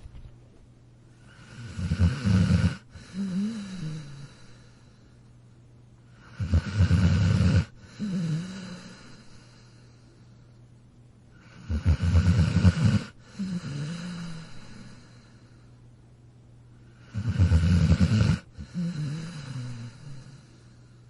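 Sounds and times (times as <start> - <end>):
dog snoring: 1.2 - 4.8, 6.1 - 9.8, 11.4 - 15.4, 16.9 - 21.0.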